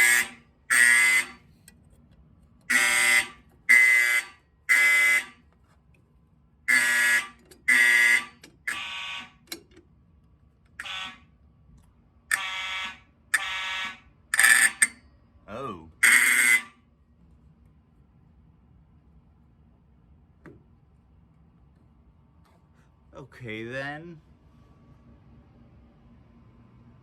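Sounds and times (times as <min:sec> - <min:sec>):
fire alarm horn buzzing blasts: 0:00.0 - 0:01.6, 0:02.7 - 0:05.5, 0:06.6 - 0:09.6, 0:10.8 - 0:11.4, 0:12.3 - 0:15.0, 0:15.9 - 0:16.8.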